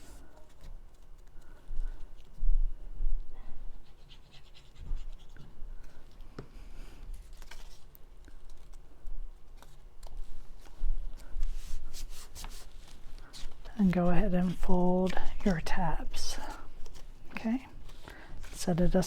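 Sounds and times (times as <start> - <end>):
paper rubbing and rustling: 7.1 - 19.0.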